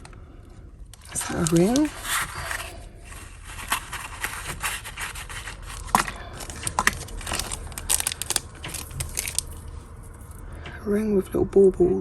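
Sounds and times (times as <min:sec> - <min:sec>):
plastic packets crinkling: 0:00.9 - 0:10.4.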